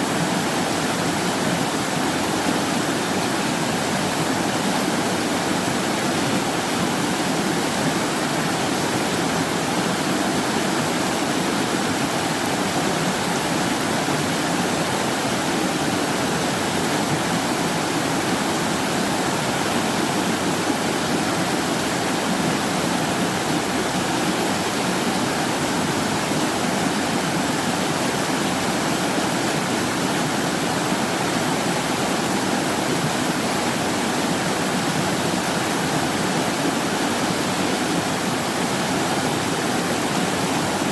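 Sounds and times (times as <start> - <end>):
stream rushing over rocks: 0.0 - 40.9.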